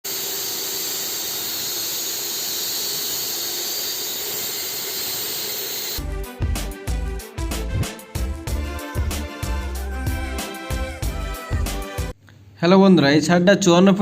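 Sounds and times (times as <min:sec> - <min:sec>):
concrete saw whining: 0:00.0 - 0:06.0.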